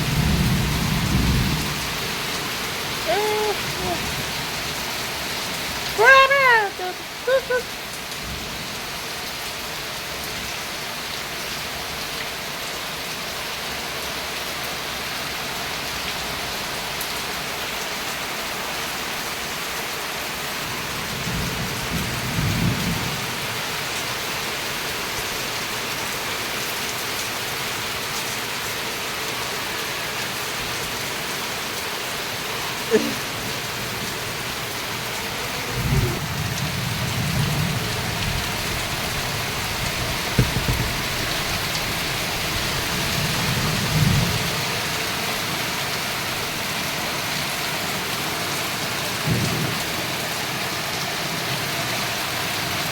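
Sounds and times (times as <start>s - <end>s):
thunder rumble: 0.0s - 2.6s, 35.7s - 42.7s
steady rain hiss: 0.0s - 52.9s.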